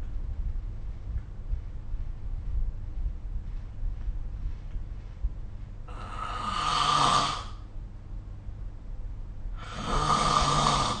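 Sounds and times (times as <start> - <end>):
person snoring: 5.9 - 7.6, 9.6 - 11.0.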